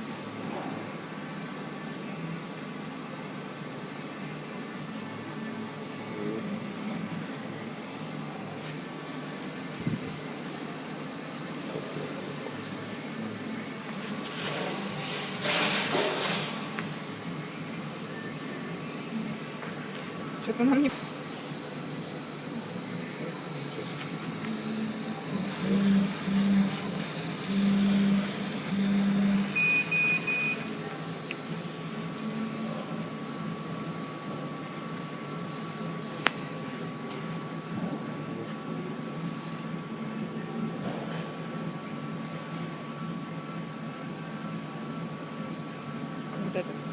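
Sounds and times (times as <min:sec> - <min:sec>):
laser cutter hissing: 0:00.0 - 0:46.9
short high beeps: 0:28.7 - 0:30.7.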